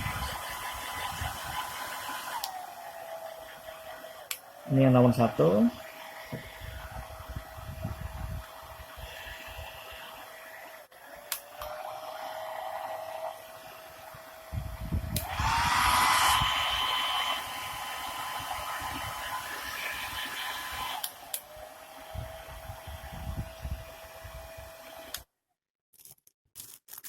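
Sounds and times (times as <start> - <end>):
hair dryer whine and rushing air: 0.0 - 25.3.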